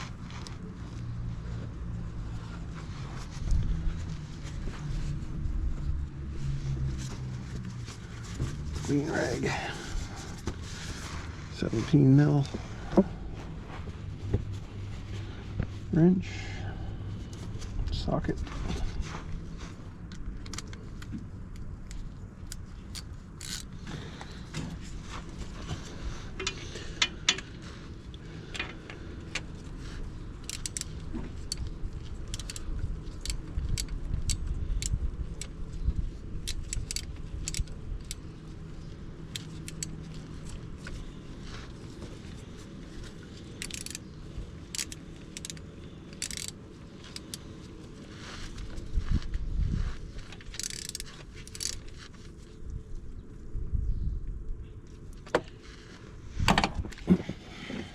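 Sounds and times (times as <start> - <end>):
low steady rumble: 0.0 - 57.9
socket wrench ratcheting: 21.9 - 23.7, 30.4 - 35.6, 36.4 - 38.2, 39.3 - 40.0, 43.5 - 44.0, 44.6 - 47.4, 50.4 - 51.9.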